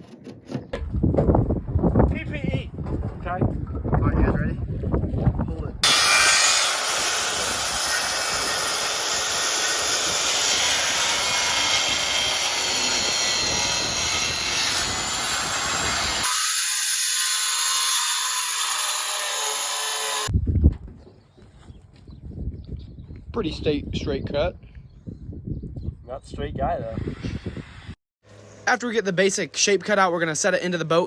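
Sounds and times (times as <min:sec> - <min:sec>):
power saw cutting plywood: 0:05.8 - 0:20.3.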